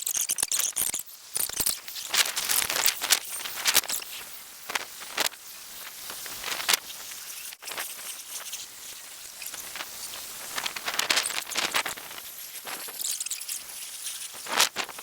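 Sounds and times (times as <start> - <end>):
sharp rustles and crackles: 0.0 - 15.0
wind rushing through leaves: 8.6 - 12.8.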